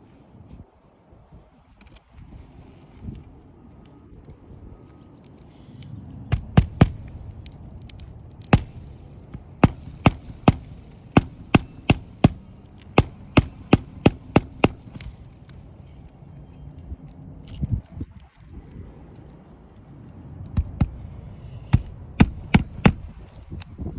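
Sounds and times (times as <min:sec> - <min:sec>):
hammer driving nails: 0:08.5 - 0:15.1, 0:21.8 - 0:23.4.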